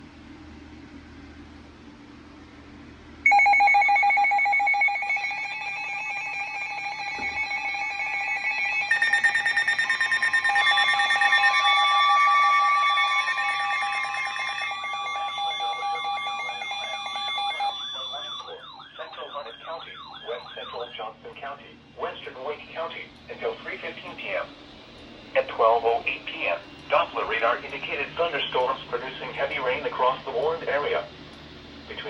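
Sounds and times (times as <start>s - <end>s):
loud electronic alert tones: 3.3s - 21.0s.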